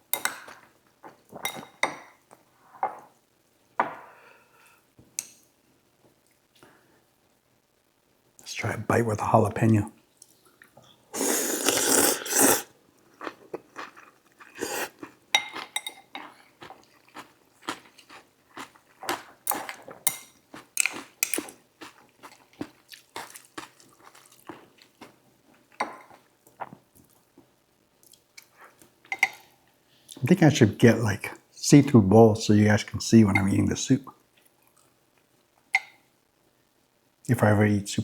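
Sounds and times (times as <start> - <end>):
loud slurp: 11.2 - 12.7, 14.6 - 15.0
crunching and chewing: 13.1 - 26.8.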